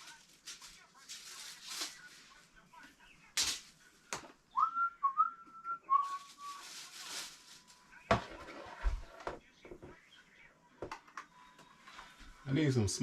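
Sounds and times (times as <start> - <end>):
person whistling a tune: 4.6 - 6.6.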